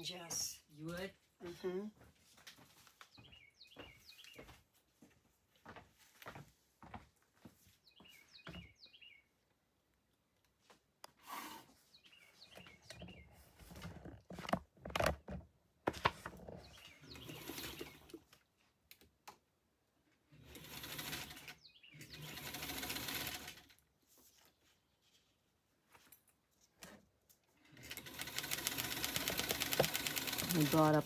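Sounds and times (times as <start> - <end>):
sewing machine stitching paper: 20.4 - 23.7, 27.8 - 31.0.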